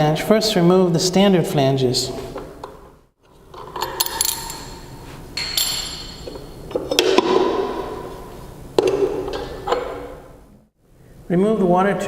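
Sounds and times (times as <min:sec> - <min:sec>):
sharp metal clinks: 0:03.9 - 0:06.6.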